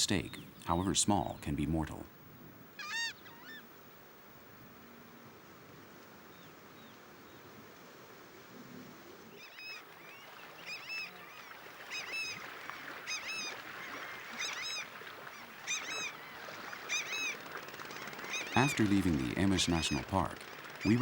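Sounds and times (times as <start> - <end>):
faint outdoor background: 0.0 - 21.0
birds honking calls: 2.7 - 3.8, 9.4 - 21.0.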